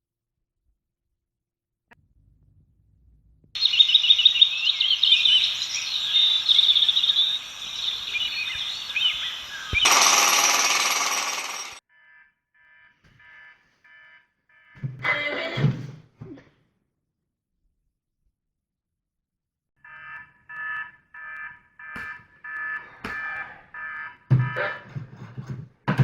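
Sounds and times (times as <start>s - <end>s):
birds chirping: 3.6s - 11.8s
faint rapid electronic beeping: 3.6s - 11.8s
harsh alarm clock buzz: 5.4s - 11.8s.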